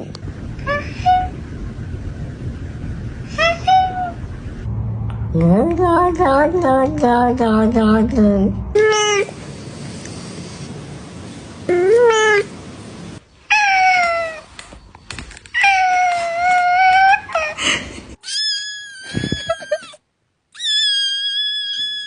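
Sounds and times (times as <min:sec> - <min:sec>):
cat meowing: 0:18.2 - 0:20.0.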